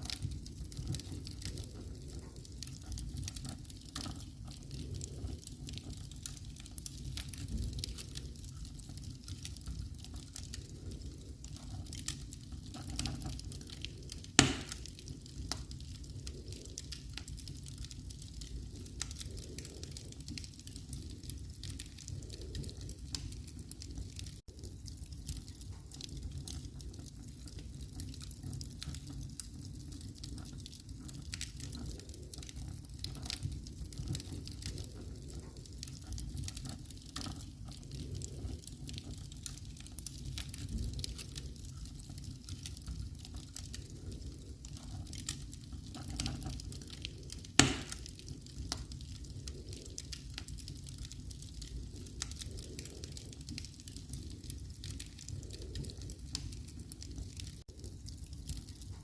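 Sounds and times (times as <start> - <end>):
fire crackling in fireplace: 0.0 - 59.0
loud sharp pop: 14.4 - 14.8, 47.6 - 47.9.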